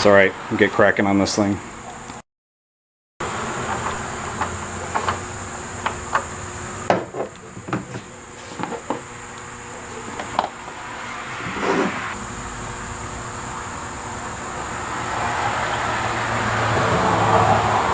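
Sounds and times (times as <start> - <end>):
high-pitched insect trill: 12.1 - 17.9.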